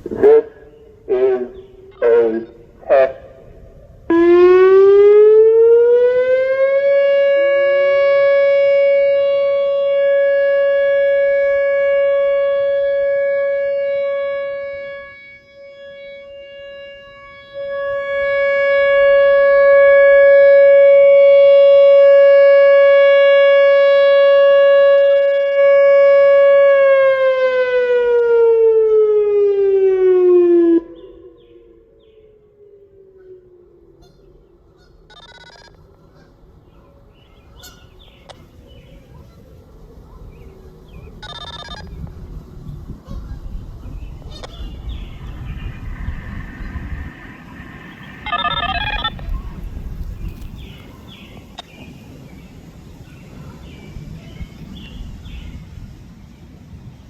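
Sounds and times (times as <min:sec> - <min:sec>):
electronic warning siren: 0:00.0 - 0:36.0, 0:41.0 - 0:42.2, 0:44.3 - 0:51.8.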